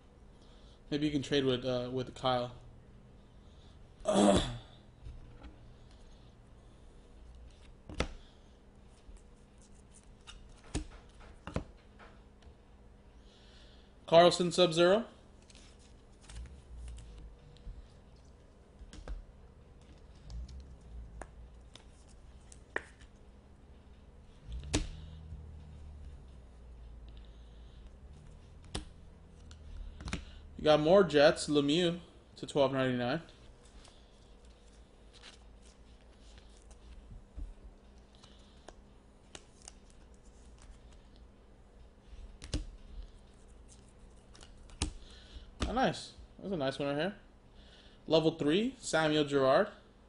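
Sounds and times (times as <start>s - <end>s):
trading cards flipped through: 9.0s - 11.8s, 15.4s - 23.2s, 24.3s - 26.4s, 27.1s - 30.4s, 33.5s - 41.2s, 42.2s - 45.7s
cards clicking and tapping: 10.0s - 12.2s, 19.8s - 23.2s, 24.6s - 25.4s, 28.4s - 30.4s, 42.2s - 43.2s, 43.8s - 45.8s.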